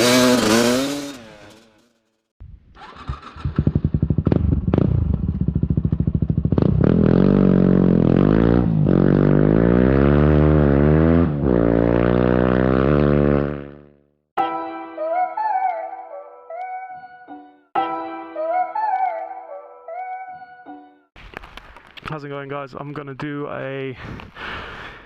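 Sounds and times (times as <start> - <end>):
motorcycle engine starting and idling: 0.0 - 8.3.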